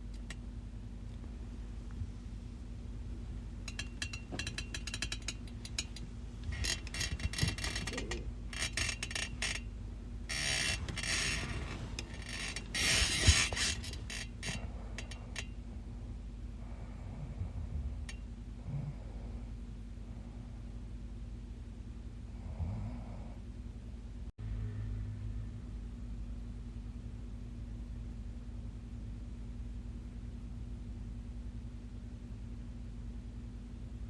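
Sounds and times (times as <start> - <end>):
low hum: 0.0 - 34.0
clicks and crackles: 3.7 - 9.6
bedclothes rustling: 10.7 - 14.1.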